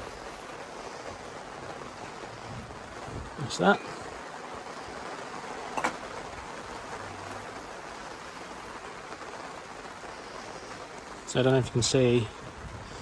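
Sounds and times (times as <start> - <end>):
background hiss: 0.0 - 13.0
light knock: 5.8 - 6.0.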